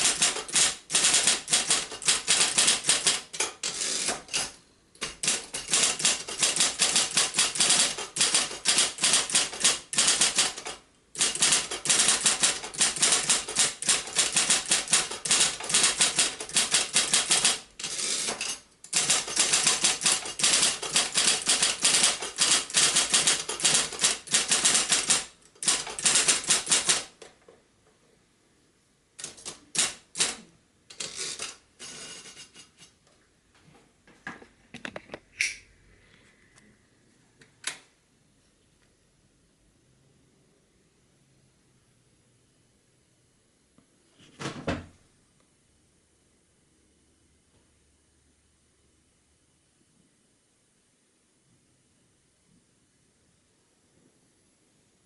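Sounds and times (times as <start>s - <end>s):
electric typewriter keystrokes: 0.0s - 27.3s, 29.2s - 32.5s
quiet typewriter motor: 0.0s - 27.3s, 29.2s - 32.7s.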